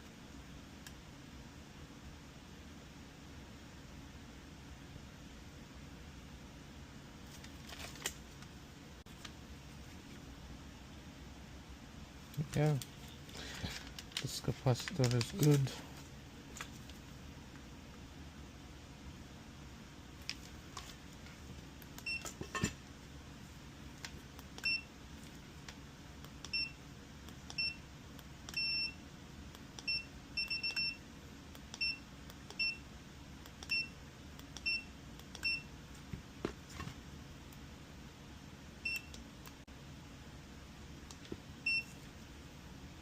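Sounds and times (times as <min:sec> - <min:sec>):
multimeter high beeps: 0:28.5 - 0:29.0, 0:29.8 - 0:31.0, 0:31.8 - 0:32.8.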